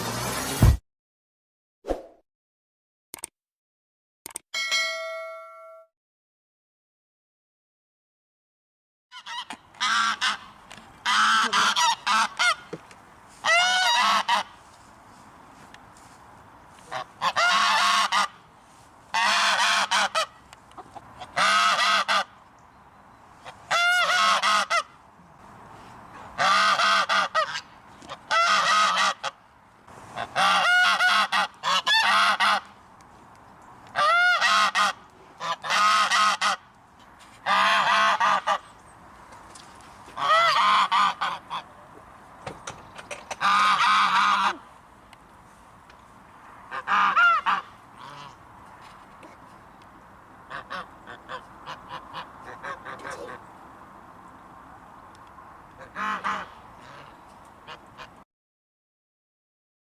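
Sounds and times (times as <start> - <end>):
goose honking: 9.2 - 12.7, 13.4 - 14.6, 16.8 - 18.4, 19.1 - 22.4, 23.4 - 24.9, 26.4 - 29.4, 30.2 - 32.7, 34.0 - 36.6, 37.4 - 38.6, 40.2 - 41.7, 43.3 - 44.6, 46.7 - 48.4, 50.5 - 53.4, 55.8 - 58.2.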